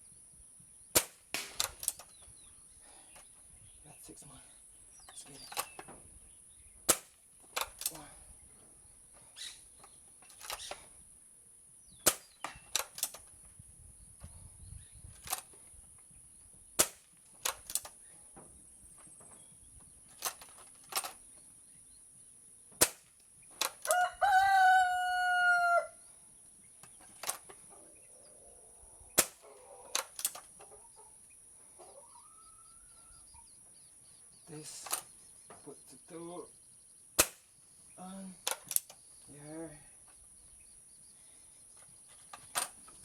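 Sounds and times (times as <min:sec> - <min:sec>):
air rifle shots: 0:00.9 - 0:02.2, 0:06.8 - 0:08.1, 0:12.0 - 0:13.2, 0:16.7 - 0:17.9, 0:22.8 - 0:23.9, 0:29.2 - 0:30.4, 0:37.2 - 0:37.6
air rifle barrel clicks: 0:01.0 - 0:02.3, 0:05.0 - 0:06.0, 0:06.9 - 0:08.1, 0:09.8 - 0:10.9, 0:12.0 - 0:13.5, 0:15.1 - 0:15.6, 0:16.8 - 0:18.1, 0:19.8 - 0:21.3, 0:22.8 - 0:24.1, 0:26.8 - 0:27.6, 0:29.2 - 0:30.7, 0:34.7 - 0:35.2, 0:38.4 - 0:39.1, 0:41.8 - 0:43.0
rooster crowing: 0:23.8 - 0:26.0.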